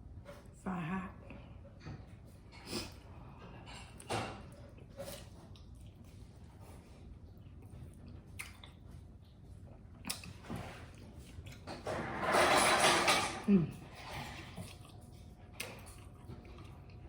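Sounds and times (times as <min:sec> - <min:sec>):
wet chewing smacks: 0:07.2 - 0:11.7, 0:14.5 - 0:17.0.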